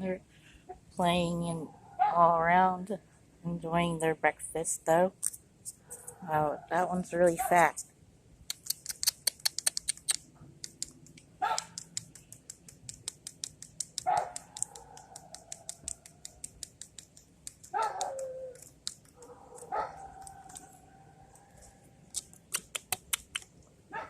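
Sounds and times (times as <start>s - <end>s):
dog barking: 2.0s - 2.2s, 11.4s - 11.8s, 14.0s - 15.3s, 17.7s - 18.6s, 19.2s - 20.8s
quick sharp clicks: 8.5s - 20.7s, 22.1s - 23.6s.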